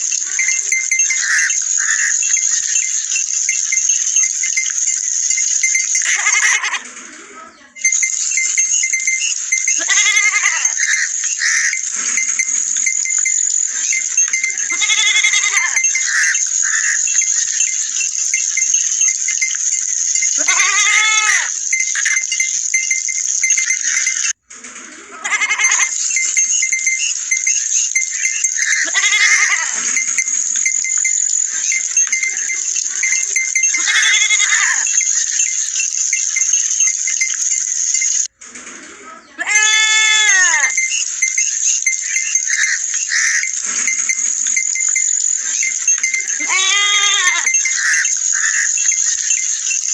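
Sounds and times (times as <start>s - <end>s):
faint ringing tone: 0.0s - 6.9s, 7.8s - 24.4s, 25.3s - 38.4s, 39.6s - 49.9s
goats and sheep bleating: 0.2s - 2.9s, 5.9s - 6.9s, 9.6s - 17.8s, 20.4s - 22.2s, 25.1s - 26.0s, 28.1s - 35.0s, 39.2s - 40.8s, 42.0s - 49.4s.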